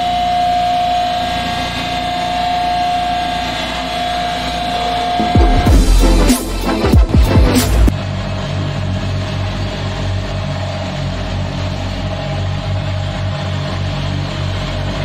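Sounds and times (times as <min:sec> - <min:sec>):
diesel engine running: 0:00.0 - 0:15.0
music: 0:05.0 - 0:07.9.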